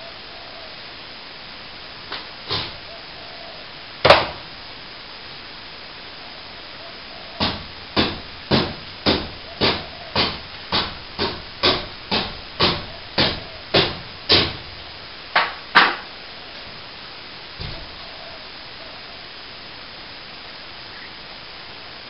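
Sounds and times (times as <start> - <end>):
hammer blows: 7.4 - 14.7.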